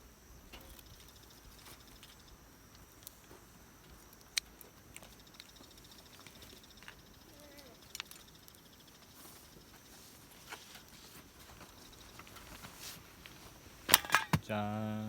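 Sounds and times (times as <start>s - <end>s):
soft ticks: 1.9s - 9.1s.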